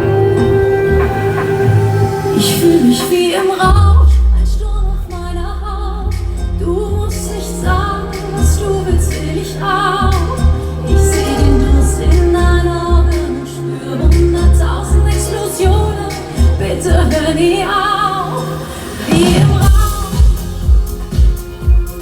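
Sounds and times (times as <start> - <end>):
woman singing: 0.0 - 21.7
heavy bass beat: 3.6 - 13.3, 19.1 - 22.0.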